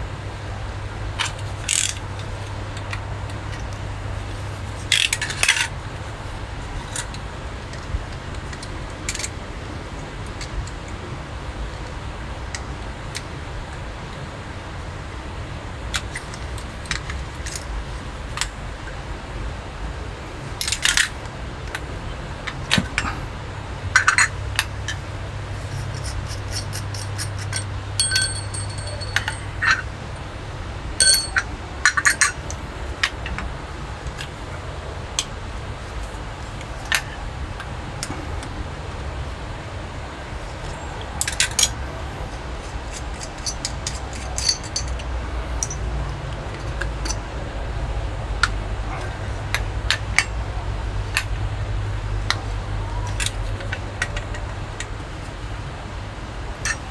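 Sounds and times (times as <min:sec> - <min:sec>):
low steady hum: 0:00.0 - 0:56.9
metallic clicks and clinks: 0:25.7 - 0:29.9, 0:31.0 - 0:32.5, 0:42.6 - 0:45.9.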